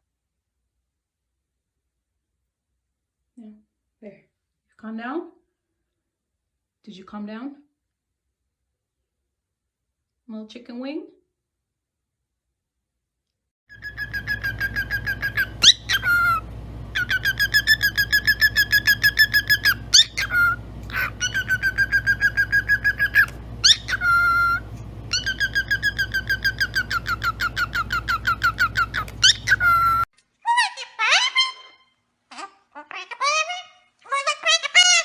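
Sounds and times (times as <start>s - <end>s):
parrot rising whistles: 13.7s - 30.1s
parrot chirping rapidly: 13.7s - 35.0s.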